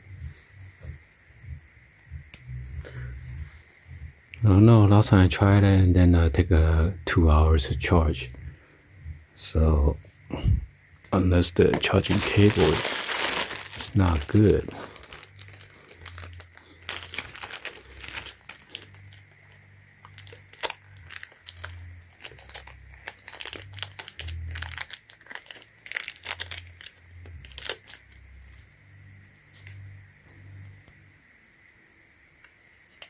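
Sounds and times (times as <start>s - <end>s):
plastic packaging crinkling: 11.5s - 28.6s.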